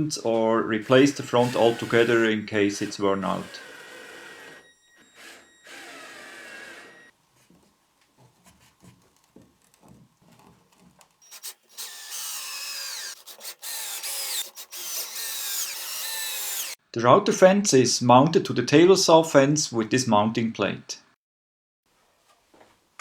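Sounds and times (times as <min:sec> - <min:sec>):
drill driver driving screws: 0:00.8 - 0:07.1, 0:11.2 - 0:16.8.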